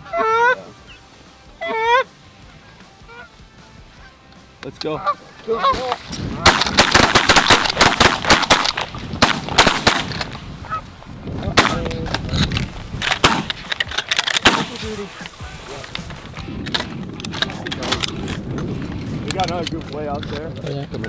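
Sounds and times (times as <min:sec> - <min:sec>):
goose honking: 0:00.0 - 0:11.0
shotgun fire: 0:05.7 - 0:10.4, 0:11.6 - 0:12.3, 0:13.0 - 0:15.8.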